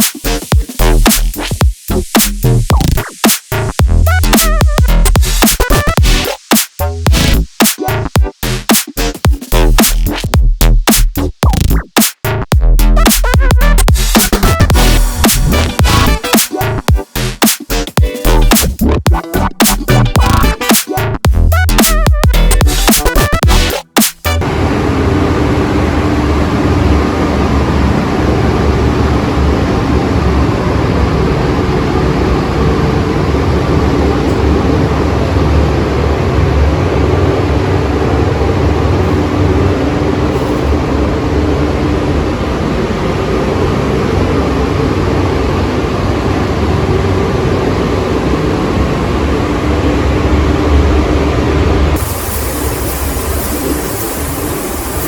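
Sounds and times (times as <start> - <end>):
low mechanical rumble: 0.2 - 8.2, 12.6 - 20.6, 24.3 - 55.0
faint hum: 24.3 - 55.0.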